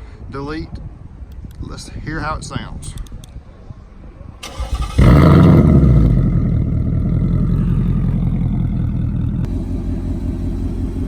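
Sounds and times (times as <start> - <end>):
engine cranking: 4.4 - 5.6
car engine starting and idling: 4.4 - 11.0
engine rev flare: 4.4 - 11.0.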